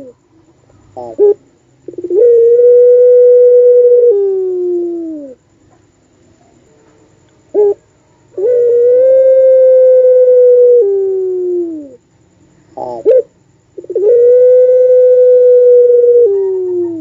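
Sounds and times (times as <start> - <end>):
dove cooing: 0.0 - 0.2, 0.9 - 5.4, 7.5 - 12.0, 12.8 - 17.0.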